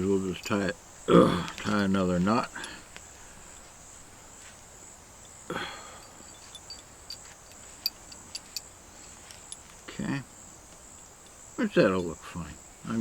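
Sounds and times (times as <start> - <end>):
crickets chirring: 0.0 - 13.0
short rustle: 1.4 - 5.4, 6.0 - 10.0
light clicks of cord handling: 6.0 - 9.9.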